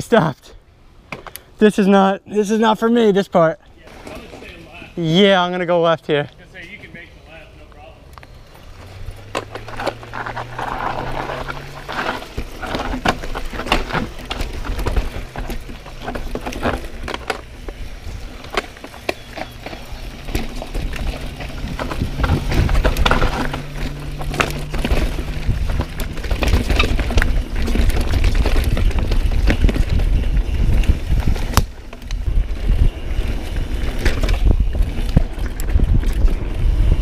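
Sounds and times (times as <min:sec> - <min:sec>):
bike frame and chain rattling: 0:03.8 - 0:05.8, 0:06.4 - 0:37.0
wind rush: 0:27.2 - 0:37.0.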